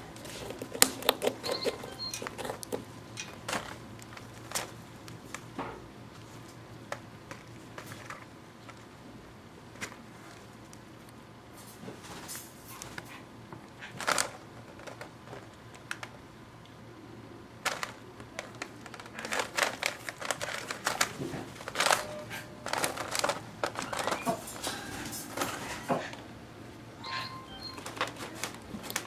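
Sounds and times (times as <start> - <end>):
squirrel gnawing on pumpkin: 0.0 - 9.1, 17.6 - 24.2.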